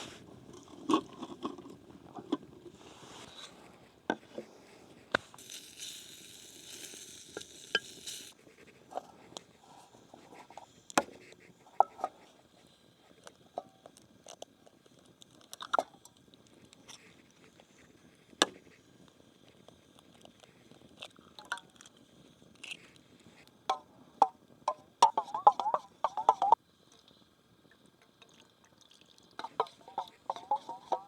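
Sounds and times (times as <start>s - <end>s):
liquid gurgling as it pours: 0.2s - 2.8s, 25.0s - 31.0s
camp cookware clicking and knocking: 23.7s - 26.6s, 29.4s - 31.0s.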